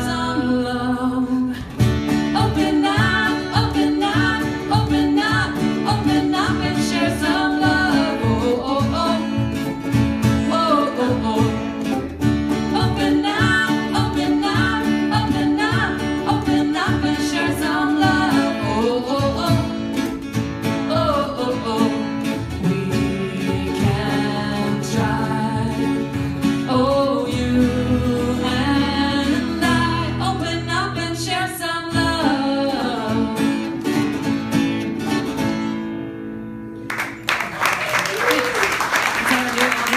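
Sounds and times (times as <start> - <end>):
acoustic guitar: 0.0 - 39.9
person singing: 2.3 - 9.4, 10.4 - 12.0, 20.9 - 33.8.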